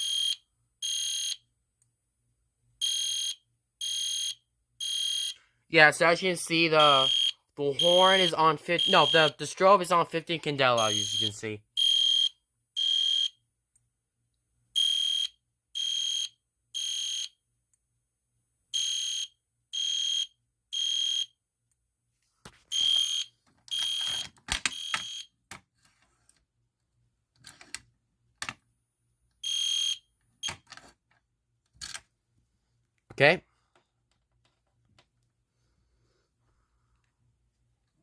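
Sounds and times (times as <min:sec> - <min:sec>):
fire alarm horn beeping: 0:00.0 - 0:01.4, 0:02.8 - 0:05.4, 0:06.7 - 0:09.5, 0:10.8 - 0:13.3, 0:14.8 - 0:17.3, 0:22.7 - 0:25.3, 0:29.4 - 0:30.0.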